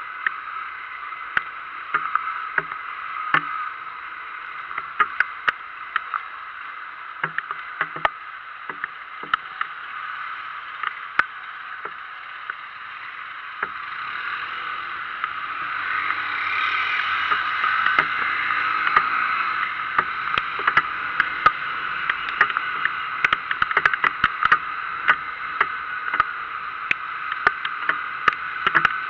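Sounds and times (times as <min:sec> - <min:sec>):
raindrops tapping: 0:01.4 - 0:03.7, 0:07.2 - 0:09.7, 0:17.2 - 0:29.0
rain hissing: 0:05.8 - 0:29.0.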